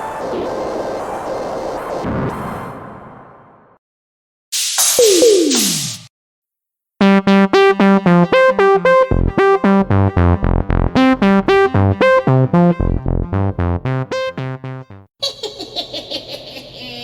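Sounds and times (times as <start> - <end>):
synth bass line: 7.0 - 15.0.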